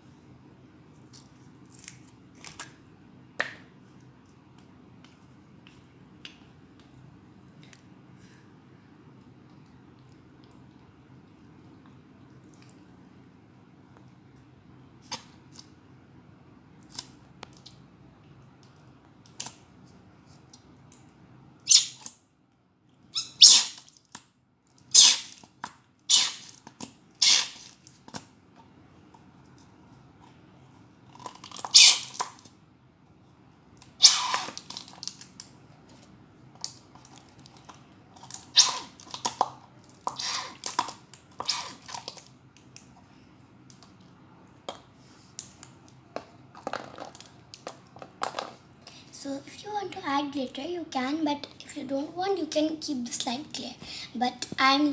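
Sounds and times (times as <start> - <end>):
slime squelching and scraping: 36.8 - 42.3.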